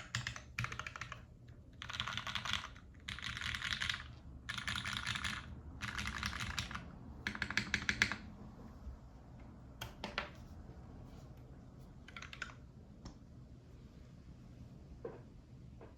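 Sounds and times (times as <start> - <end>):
mechanical keyboard typing: 0.0 - 8.2, 12.1 - 12.6.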